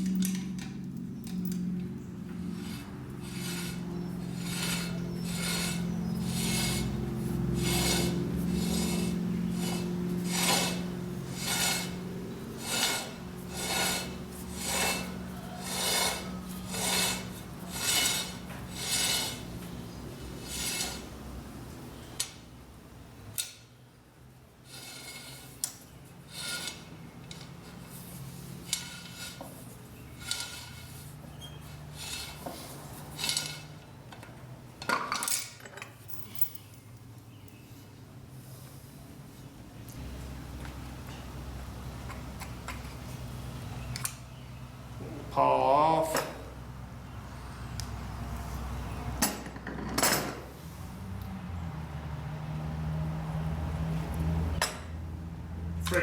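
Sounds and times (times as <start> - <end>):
steady low hum: 0.0 - 23.4
hand tool rasping strokes: 2.4 - 19.8, 20.4 - 21.2, 24.7 - 33.7.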